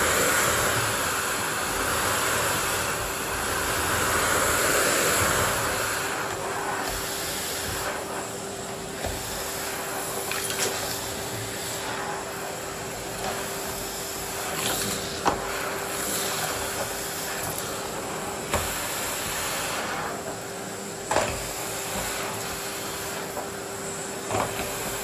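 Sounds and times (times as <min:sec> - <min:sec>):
vacuum cleaner running: 0:00.0 - 0:25.0.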